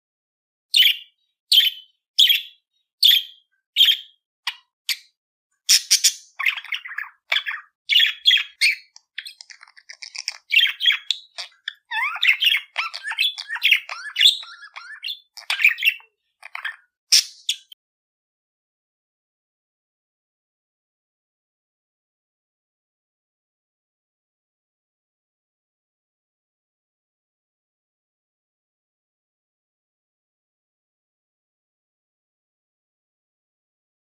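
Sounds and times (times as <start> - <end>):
parrots chirping and chattering: 0.7 - 5.1, 5.7 - 17.8.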